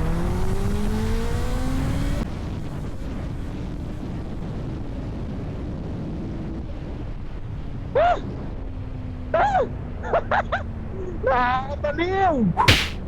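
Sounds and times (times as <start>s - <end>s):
wind rumble on microphone: 1.2s - 11.2s.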